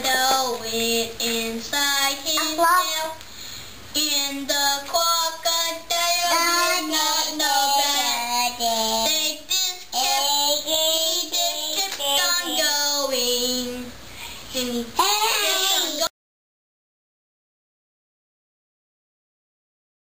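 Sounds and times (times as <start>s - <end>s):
child singing: 0.0s - 3.2s, 4.0s - 13.9s, 14.5s - 16.1s.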